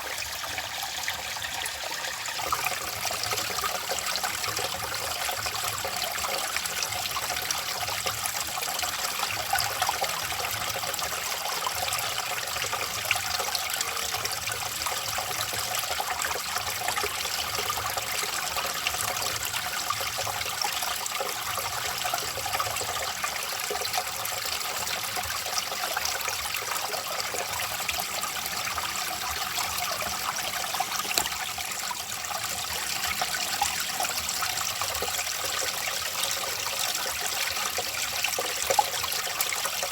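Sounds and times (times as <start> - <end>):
stream water trickling: 0.0 - 39.9.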